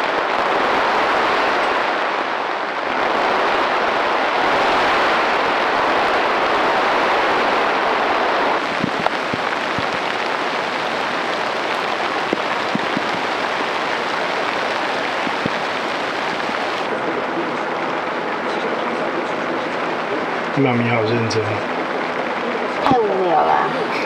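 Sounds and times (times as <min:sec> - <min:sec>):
heavy rain hissing: 0:00.0 - 0:18.4, 0:19.8 - 0:24.0
raindrops tapping: 0:08.6 - 0:16.9.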